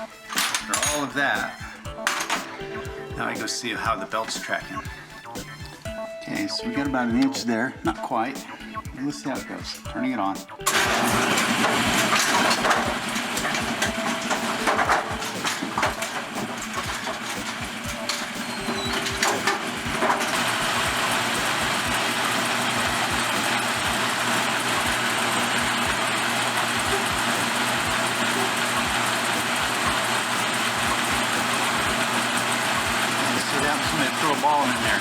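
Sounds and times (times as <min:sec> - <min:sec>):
machine clattering and whirring: 0:00.0 - 0:02.7, 0:10.7 - 0:35.0.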